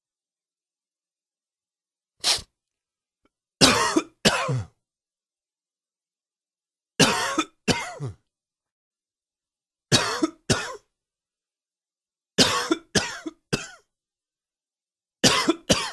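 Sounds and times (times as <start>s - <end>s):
man coughing: 3.6s - 4.8s, 7.0s - 8.2s, 9.9s - 10.9s, 12.4s - 13.8s, 15.2s - 15.9s.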